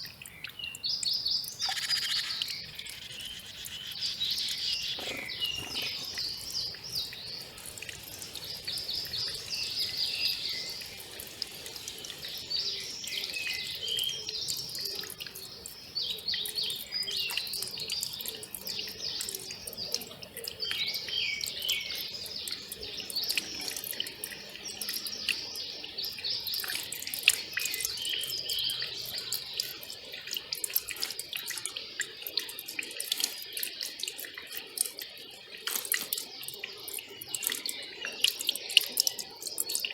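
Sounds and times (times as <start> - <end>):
small birds chirping: 0.0 - 39.9
stream trickling and splashing: 0.0 - 39.9.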